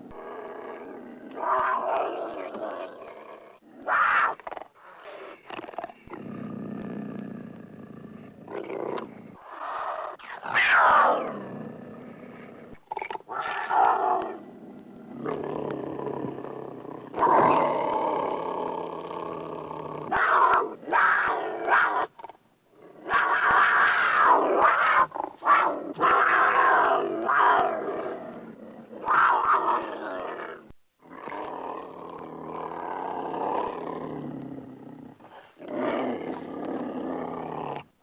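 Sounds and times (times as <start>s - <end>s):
cougar calling: 3.6s - 6.2s, 9.4s - 11.4s, 12.7s - 18.2s, 23.0s - 34.1s.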